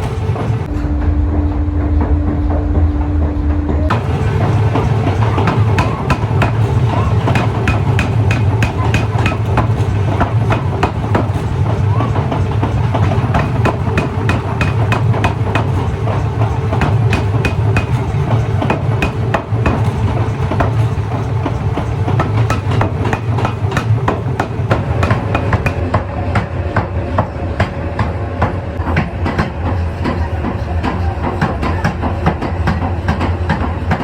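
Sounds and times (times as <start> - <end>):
low machinery hum: 0.0 - 34.0
forging hammer blows on metal: 3.9 - 29.5.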